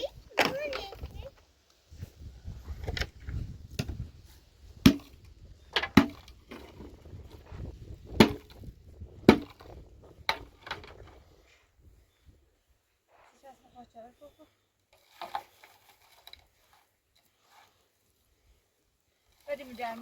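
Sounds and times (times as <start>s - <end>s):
wind rumble on microphone: 0.0s - 5.8s, 6.4s - 12.4s.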